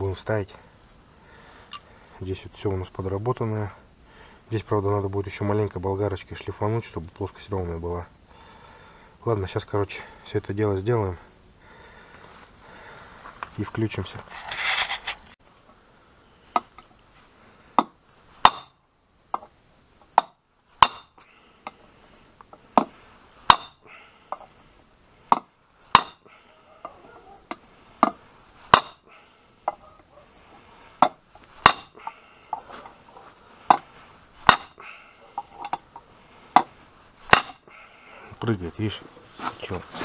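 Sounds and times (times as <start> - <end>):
hammer striking metal: 26.0 - 26.2, 31.0 - 32.0, 34.5 - 34.8.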